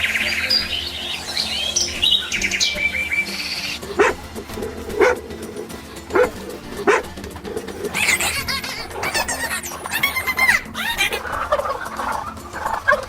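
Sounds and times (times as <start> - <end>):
background music: 0.0 - 13.0
birds chirping: 0.0 - 13.0
dog barks: 3.8 - 13.0.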